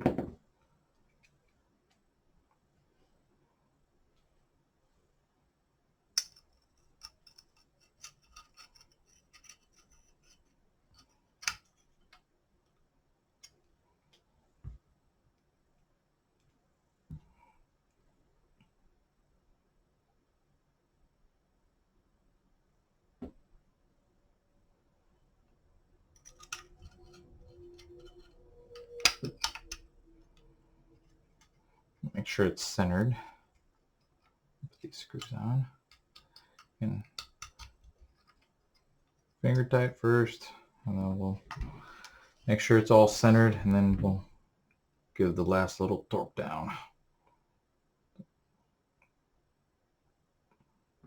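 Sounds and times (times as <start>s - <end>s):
small metal parts clicking: 26.1s - 29.9s, 35.2s - 38.5s.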